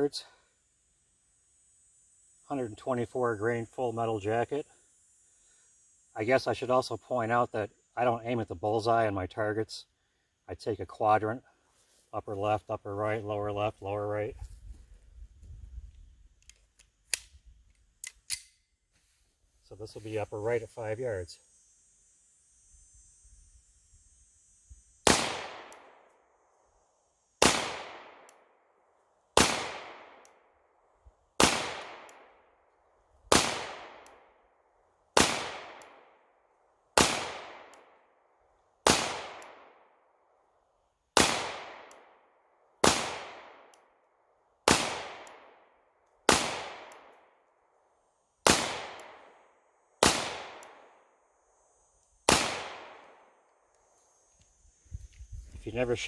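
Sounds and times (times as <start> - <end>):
pistol shots with echo: 29.4 - 30.2, 31.4 - 32.3, 35.2 - 36.0, 37.0 - 37.7, 41.2 - 41.9, 42.8 - 43.7, 44.7 - 45.6, 46.3 - 47.1, 48.4 - 49.3, 50.0 - 50.9, 52.3 - 53.2.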